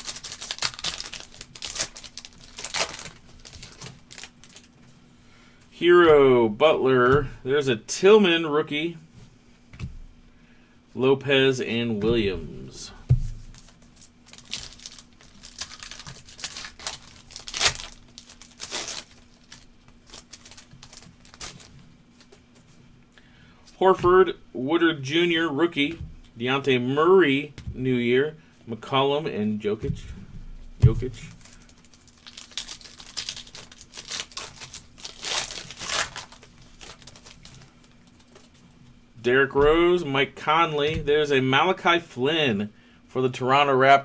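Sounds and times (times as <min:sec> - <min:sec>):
foil wrapper tearing and crinkling: 0:00.0 - 0:04.8, 0:13.5 - 0:21.8, 0:31.4 - 0:38.5.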